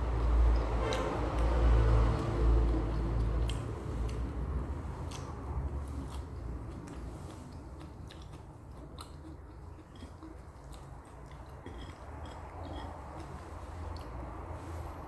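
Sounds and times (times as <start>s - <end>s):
person chewing food: 0.0s - 15.0s
wet mouth clicks: 2.7s - 4.3s, 5.0s - 5.4s, 7.9s - 13.4s.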